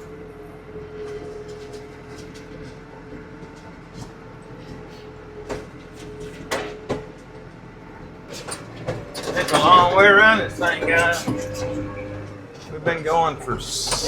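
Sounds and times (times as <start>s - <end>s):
tractor engine running: 0.0s - 14.0s
held whine: 8.8s - 14.0s.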